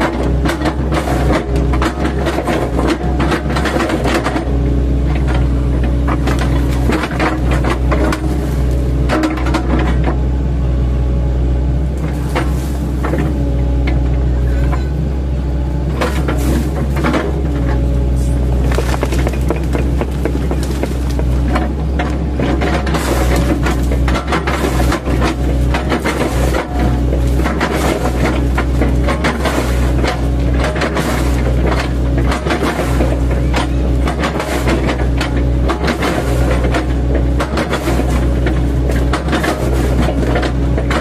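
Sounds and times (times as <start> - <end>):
excavator diesel engine running: 0.0 - 41.0
bucket knocking and cracking wood: 18.6 - 41.0.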